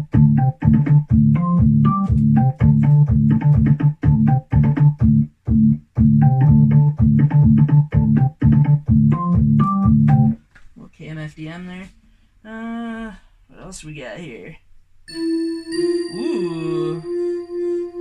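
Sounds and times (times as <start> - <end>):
staccato organ-like keyboard chords: 0.0 - 10.4.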